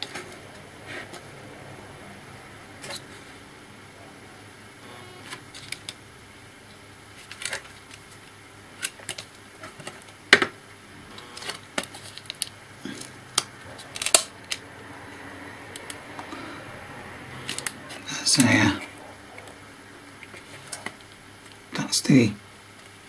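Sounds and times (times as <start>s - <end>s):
laptop parts clicking and tapping: 13.3s - 14.6s, 17.4s - 17.8s.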